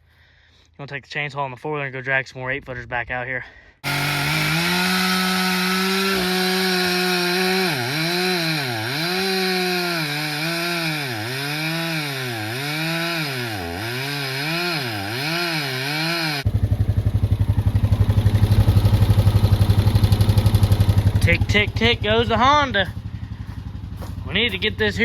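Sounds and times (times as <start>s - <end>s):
chainsaw cutting wood: 3.8s - 16.5s, 18.0s - 21.8s
four-wheeler engine idling: 16.4s - 25.0s.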